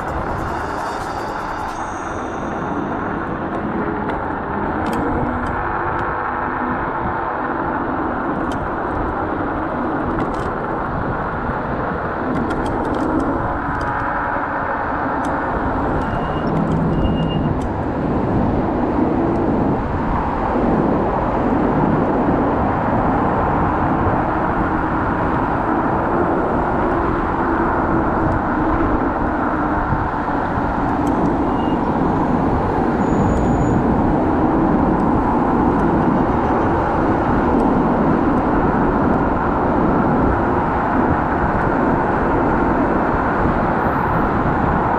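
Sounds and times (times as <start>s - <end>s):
car traffic: 0.0s - 44.9s
scooter riding rumble: 0.0s - 44.9s
short high beeps: 16.0s - 17.5s.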